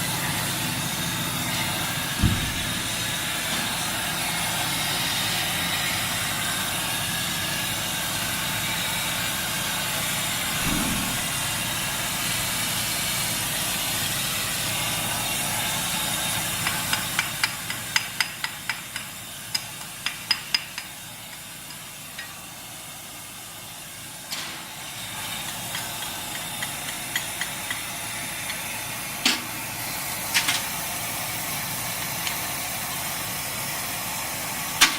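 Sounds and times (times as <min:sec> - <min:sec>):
welding arc crackling: 0:10.3 - 0:13.4
sharp taps on metal: 0:16.6 - 0:22.3.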